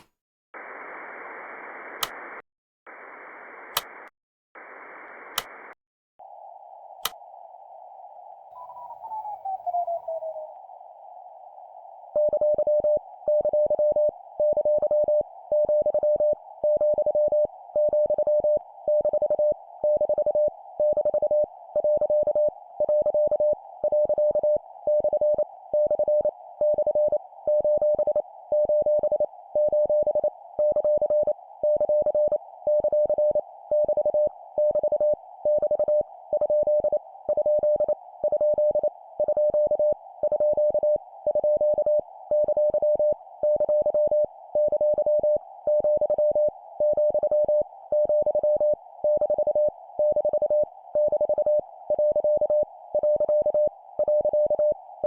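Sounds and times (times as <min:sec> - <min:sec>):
radio receiver hiss: 0:00.0 - 0:08.4
sharp clicks: 0:01.9 - 0:02.2, 0:05.3 - 0:05.8.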